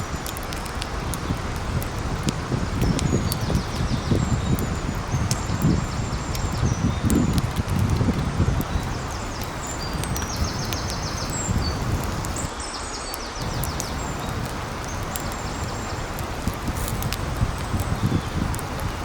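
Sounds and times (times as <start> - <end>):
wind rumbling on microphone: 0.0 - 12.5, 13.4 - 19.0
steady hiss: 8.4 - 12.7, 13.4 - 19.0.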